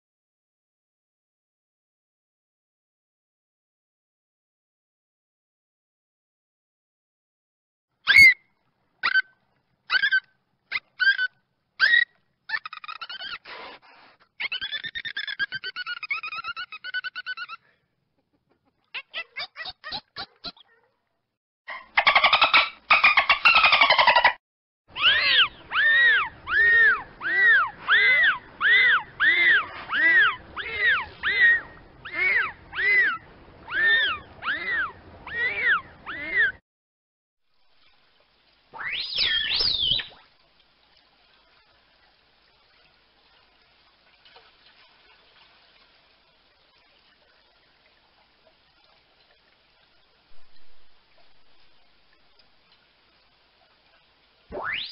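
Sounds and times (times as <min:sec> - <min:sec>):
dolphin whistles and squeaks: 0:08.0 - 0:08.4, 0:09.9 - 0:13.8, 0:14.4 - 0:17.6, 0:25.0 - 0:36.6, 0:38.8 - 0:40.2, 0:54.5 - 0:54.9
dolphin whistles: 0:08.1 - 0:08.4, 0:38.8 - 0:40.2, 0:54.5 - 0:54.9.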